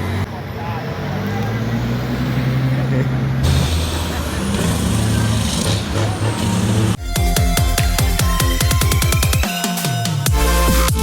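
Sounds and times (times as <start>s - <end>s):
electronic music with fast beat: 7.0s - 11.0s.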